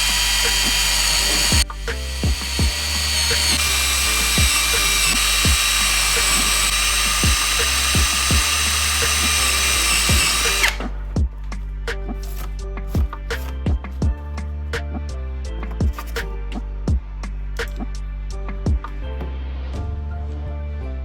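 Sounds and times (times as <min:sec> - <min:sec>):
power tool whining: 0:00.0 - 0:11.0
background music with beat: 0:00.0 - 0:21.0.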